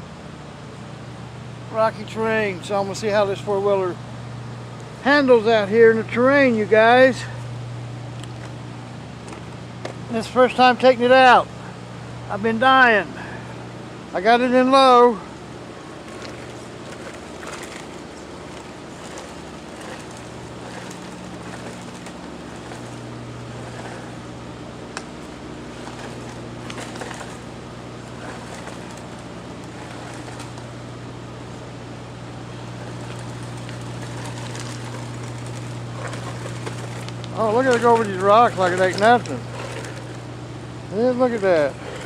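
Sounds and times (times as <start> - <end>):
toy truck motors humming: 14.9 - 42.0.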